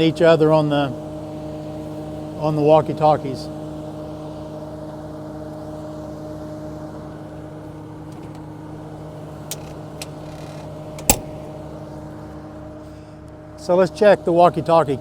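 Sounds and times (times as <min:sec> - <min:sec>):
diesel engine idling: 0:00.0 - 0:15.0
sharp click: 0:11.0 - 0:11.4.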